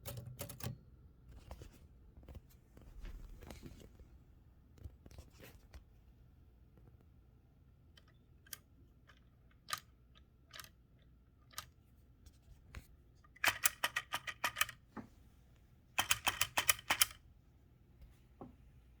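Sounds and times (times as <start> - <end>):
manual typewriter typing: 0.0 - 0.8, 13.4 - 14.8, 16.0 - 17.2.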